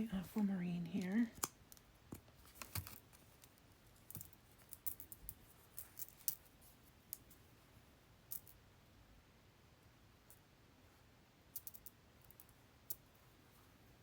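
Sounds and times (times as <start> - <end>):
beads clicking: 2.6 - 6.5.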